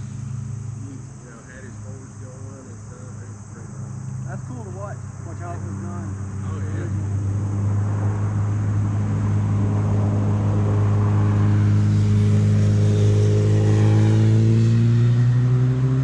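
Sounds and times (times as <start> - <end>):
motorcycle engine idling: 0.0 - 7.3.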